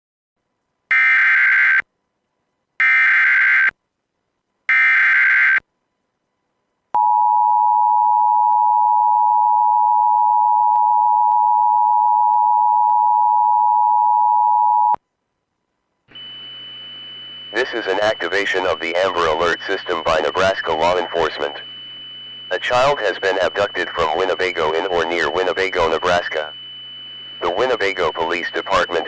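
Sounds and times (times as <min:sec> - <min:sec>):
buzzy data bursts: 0:17.5 - 0:29.0.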